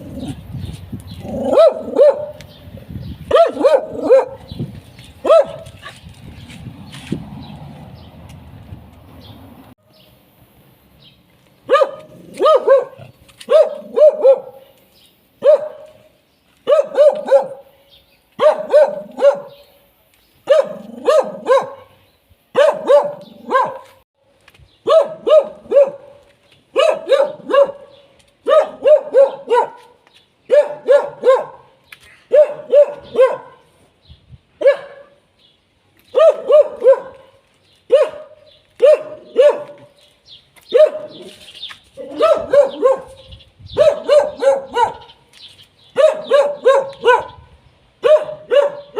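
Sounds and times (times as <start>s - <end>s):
dog barking: 1.4s - 2.4s, 3.3s - 4.5s, 5.2s - 6.0s, 11.7s - 14.7s, 15.4s - 16.0s, 16.6s - 17.7s, 18.4s - 19.7s, 20.4s - 24.0s, 24.8s - 33.7s, 34.6s - 35.2s, 36.1s - 40.0s, 40.7s - 41.4s, 42.0s - 45.2s, 45.9s - 48.9s.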